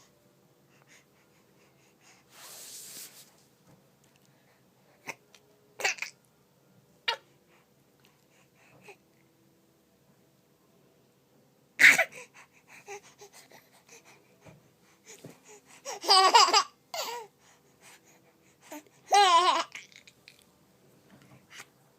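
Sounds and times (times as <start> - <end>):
baby coughing: 5.8 - 6.2, 11.8 - 12.3, 16.0 - 17.3
baby laughing: 15.9 - 17.2, 19.1 - 20.1.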